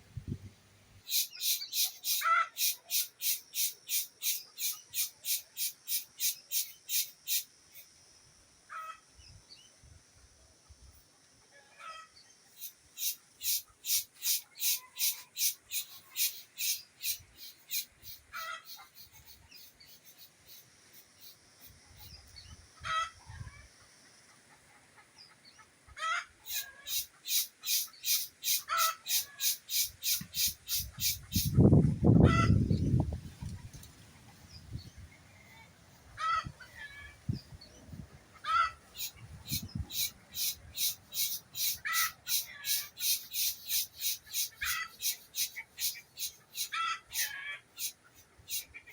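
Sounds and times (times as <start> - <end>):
rhythmic hissing animal call: 1.0 - 8.1, 12.5 - 22.3, 26.1 - 33.0, 38.3 - 48.9
farm bird honking: 1.1 - 3.0, 26.0 - 31.6, 36.2 - 37.2, 38.3 - 48.9.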